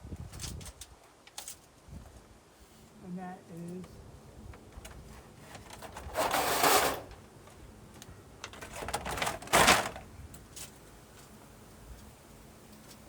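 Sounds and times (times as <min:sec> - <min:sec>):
tape measure rattling and clicking: 0:05.6 - 0:07.2.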